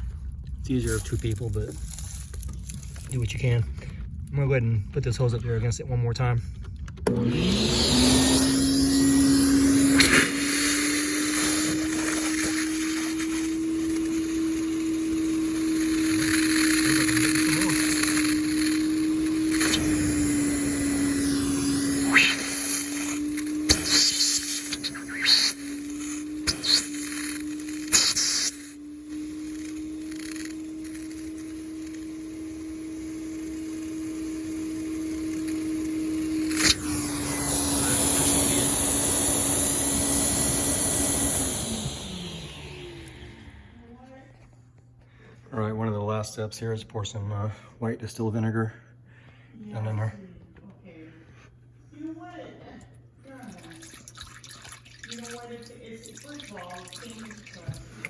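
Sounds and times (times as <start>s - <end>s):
vacuum motor humming: 7.0s - 44.1s.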